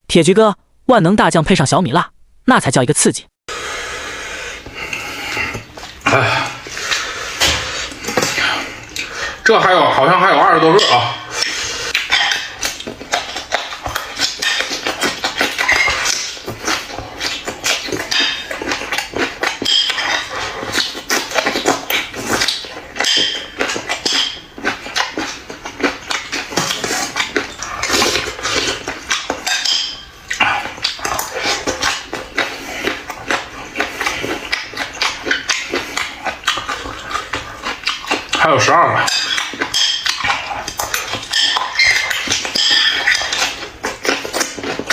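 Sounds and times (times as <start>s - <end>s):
chewing and crunching: 4.5s - 44.9s
dishes clinking: 10.6s - 16.8s, 17.8s - 24.5s, 28.5s - 32.0s, 39.0s - 43.6s.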